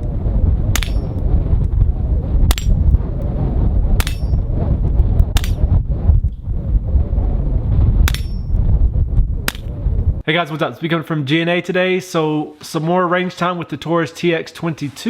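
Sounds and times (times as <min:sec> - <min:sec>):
wind rumbling on microphone: 0:00.0 - 0:10.3
metallic ring of steel plates: 0:04.0 - 0:04.4.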